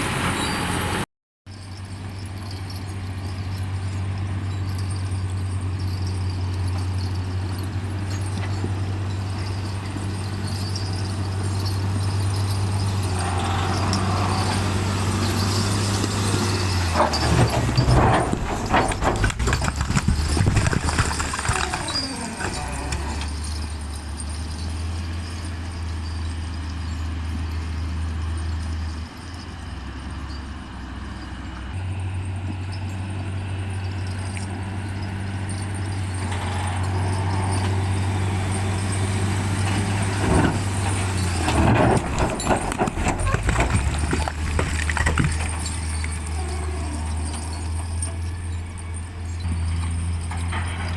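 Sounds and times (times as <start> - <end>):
diesel earthmoving machine droning: 0.0 - 50.9
clattering metal knocks and rattles: 1.5 - 29.7, 32.4 - 50.9.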